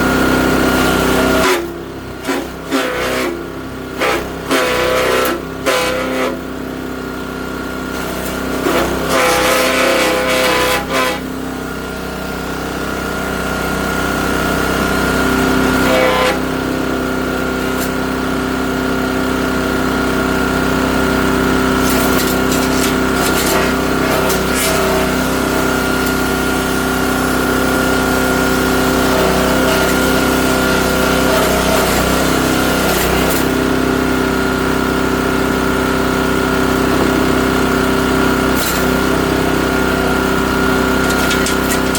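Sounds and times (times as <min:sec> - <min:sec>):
chipper shredder engine running: 0:00.0 - 0:41.9
branches crackling in cutter: 0:07.9 - 0:11.2, 0:17.6 - 0:18.0, 0:21.8 - 0:27.5, 0:28.7 - 0:33.8, 0:36.8 - 0:41.9.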